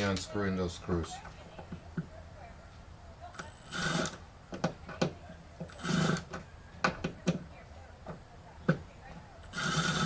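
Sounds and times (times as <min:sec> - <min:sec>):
cordless screwdriver whirring: 0:03.4 - 0:04.2, 0:05.7 - 0:06.3, 0:09.4 - 0:10.0.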